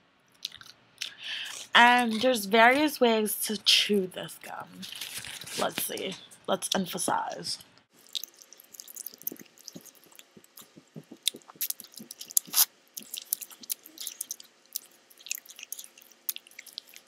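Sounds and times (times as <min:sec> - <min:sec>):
gum chewing smacks: 0:00.4 - 0:02.2, 0:08.0 - 0:17.0.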